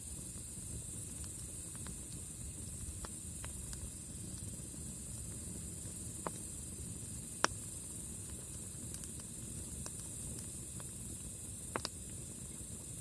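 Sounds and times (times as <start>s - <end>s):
campfire burning: 0.0s - 13.0s
crackling pops: 11.7s - 12.1s.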